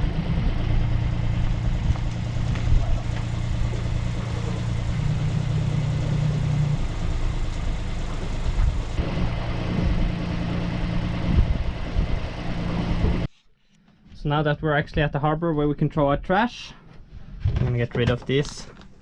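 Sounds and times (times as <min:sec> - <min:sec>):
boat engine running at low revs: 0:00.0 - 0:13.3.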